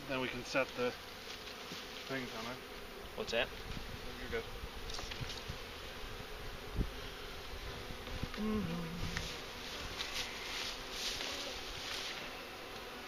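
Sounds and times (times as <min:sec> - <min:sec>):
honeybees buzzing: 0:00.0 - 0:13.0
brief lower hum: 0:08.4 - 0:09.4.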